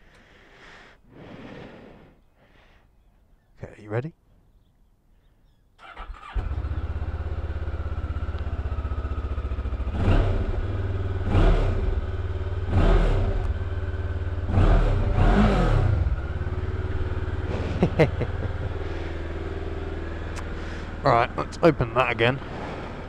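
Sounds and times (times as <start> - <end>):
motorcycle engine idling and revving: 5.8 - 23.0.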